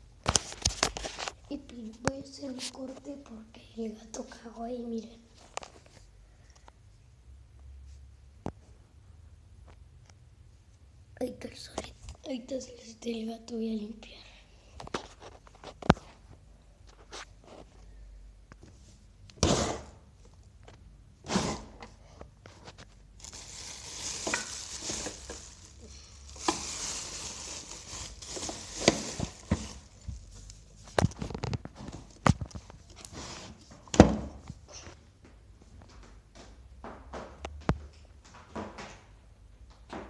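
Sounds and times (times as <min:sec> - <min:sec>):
rustling and crumpling: 0:00.2 - 0:03.3, 0:14.8 - 0:18.0, 0:22.3 - 0:33.9.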